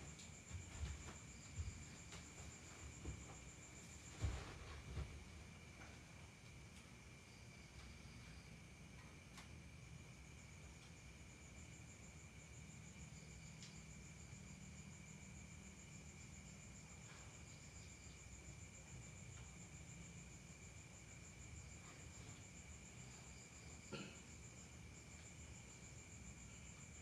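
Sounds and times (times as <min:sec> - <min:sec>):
faint crickets trilling: 0:00.0 - 0:27.0.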